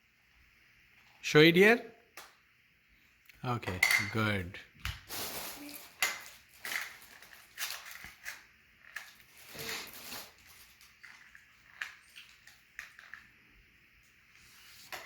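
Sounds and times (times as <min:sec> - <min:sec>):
puzzle pieces rustling: 0:05.1 - 0:12.1.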